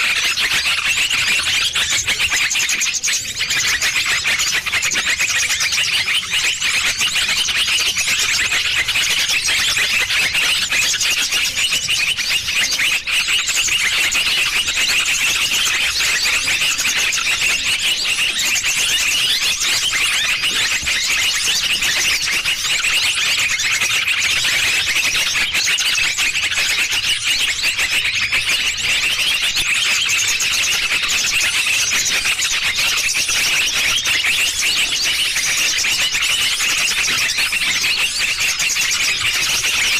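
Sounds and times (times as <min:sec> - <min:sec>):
small birds chirping and trilling: 0:00.0 - 0:39.9.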